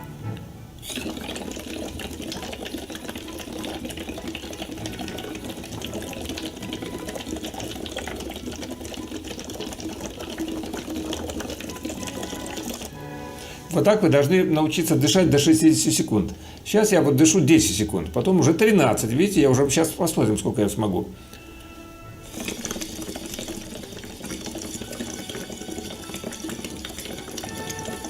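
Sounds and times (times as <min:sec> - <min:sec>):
blowing bubbles through a straw: 0:00.0 - 0:13.7, 0:21.2 - 0:28.0.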